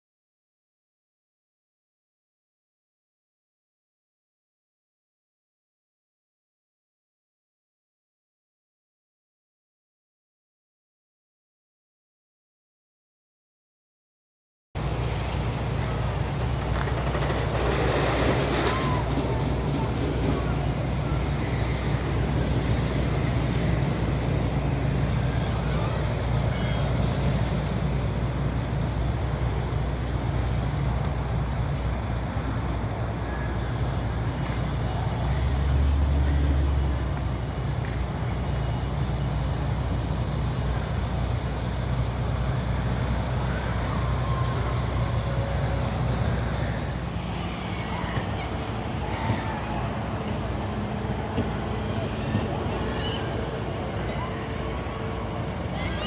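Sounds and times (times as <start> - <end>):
moving vehicle rumble: 14.8 - 56.0
thin high whines: 14.8 - 56.0.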